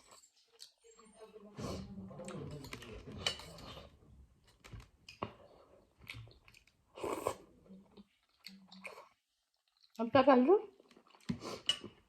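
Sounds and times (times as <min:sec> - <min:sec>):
person chewing: 0:02.7 - 0:10.0, 0:10.8 - 0:12.0.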